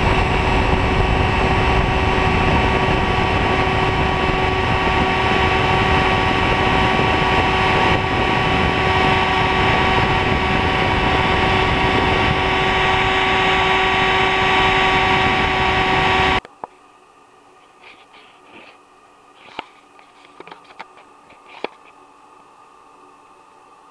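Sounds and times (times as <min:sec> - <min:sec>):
engraving machine spindle whine: 0:00.0 - 0:16.5.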